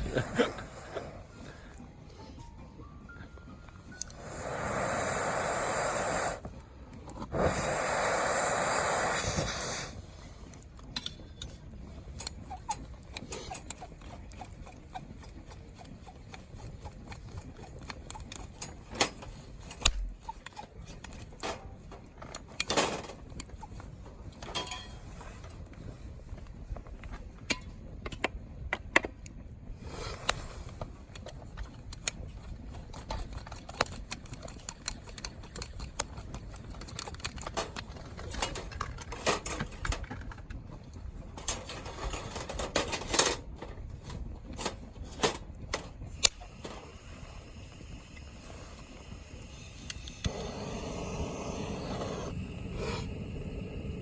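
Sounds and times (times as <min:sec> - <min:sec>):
loud hissing rush: 0:04.1 - 0:06.5, 0:07.3 - 0:10.2, 0:50.3 - 0:54.0.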